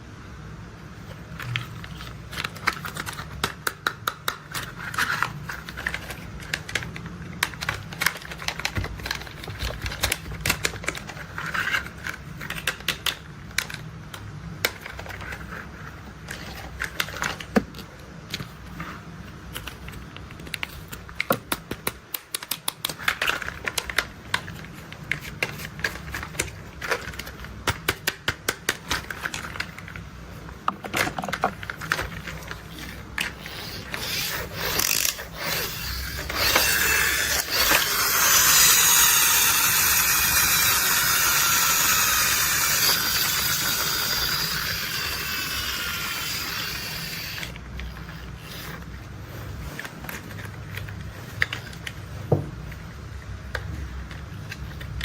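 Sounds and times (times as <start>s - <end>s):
steady low hum: 0.0s - 22.2s
plastic toy parts clicking: 1.4s - 18.5s, 19.5s - 30.0s, 30.7s - 49.0s.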